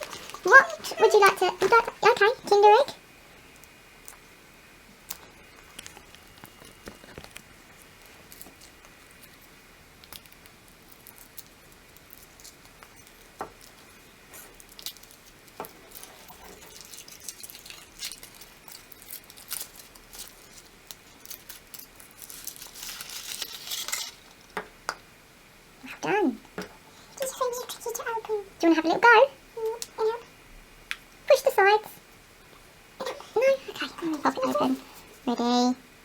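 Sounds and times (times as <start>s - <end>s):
foil crinkling: 0.0s - 2.8s, 5.1s - 24.6s.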